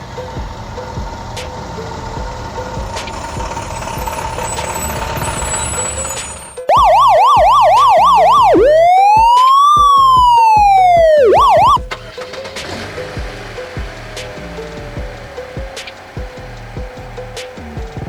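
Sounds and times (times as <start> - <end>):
electronic police siren: 4.0 - 12.8.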